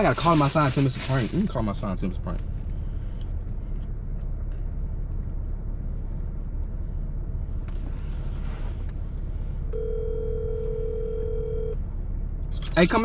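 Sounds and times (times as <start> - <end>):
low rumble inside car: 0.0 - 13.0
phone ringback tone: 9.8 - 11.8.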